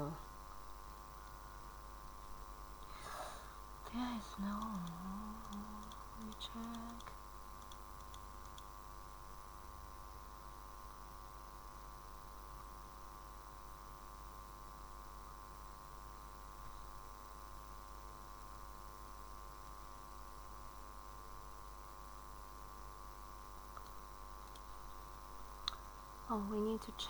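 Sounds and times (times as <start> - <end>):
faint hiss: 0.0 - 7.8
low electrical hum: 0.0 - 27.0.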